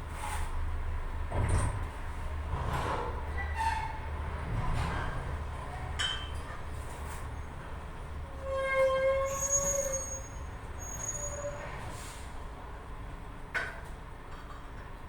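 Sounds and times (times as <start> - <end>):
metallic squeal: 8.3 - 11.7.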